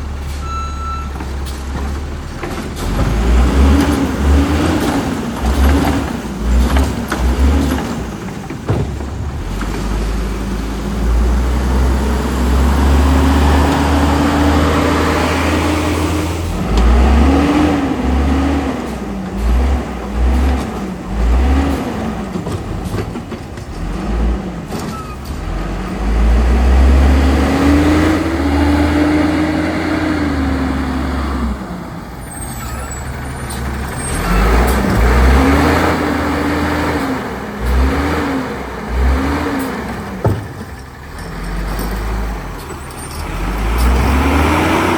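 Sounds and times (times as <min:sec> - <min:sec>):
diesel truck engine accelerating: 0:00.0 - 0:44.9.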